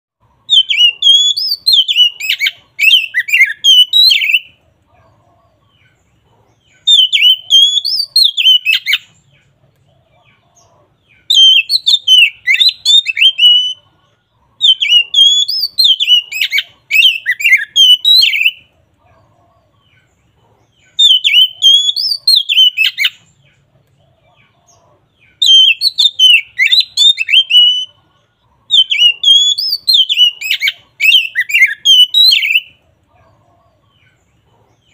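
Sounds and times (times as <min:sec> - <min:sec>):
bird singing whistled phrases: 0:00.5 - 0:04.6, 0:06.8 - 0:09.2, 0:11.3 - 0:13.8, 0:14.6 - 0:18.6, 0:21.0 - 0:23.3, 0:25.4 - 0:28.0, 0:28.7 - 0:32.8.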